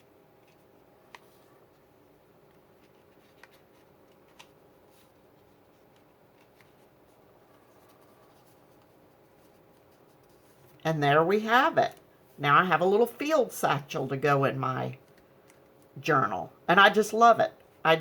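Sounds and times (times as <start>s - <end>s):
paper clicks and rustles: 0.4s - 10.8s.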